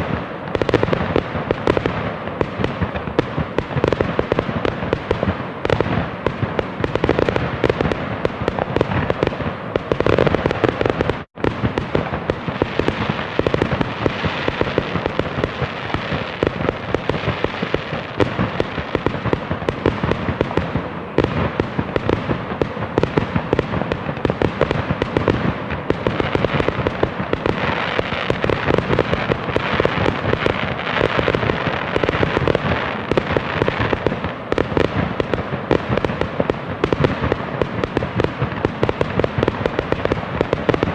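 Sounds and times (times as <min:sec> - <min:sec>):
fireworks bangs and crackling: 0:00.0 - 0:40.9.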